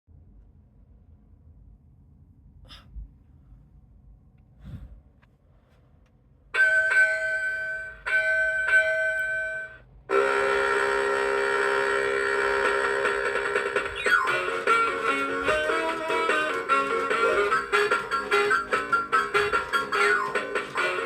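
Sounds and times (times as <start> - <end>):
horn-like blasts from toy speaker: 10.1 - 13.1
band music from toy speaker: 10.1 - 21.0.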